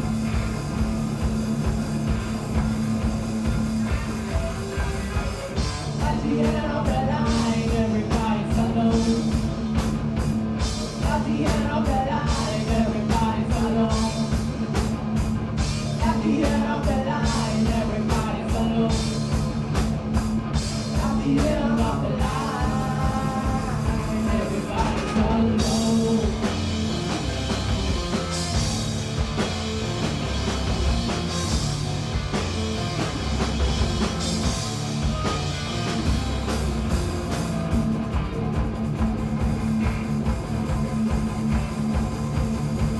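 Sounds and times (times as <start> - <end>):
drums and crashing cymbals: 0.0 - 42.9
electric guitar: 0.0 - 42.9
person singing: 6.0 - 9.4, 11.0 - 14.4, 21.0 - 26.6.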